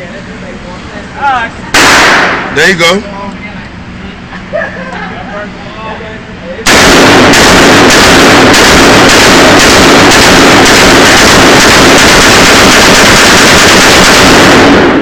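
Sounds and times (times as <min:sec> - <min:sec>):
rapid distorted gunfire: 0:01.8 - 0:02.7, 0:06.7 - 0:15.0.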